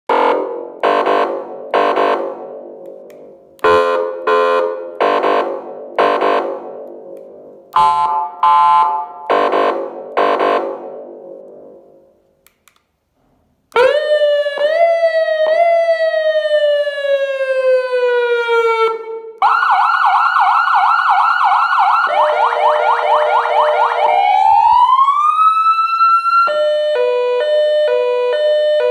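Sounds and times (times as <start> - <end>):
falling siren tone: 13.8 - 28.9
rapid warbling siren: 19.5 - 28.9.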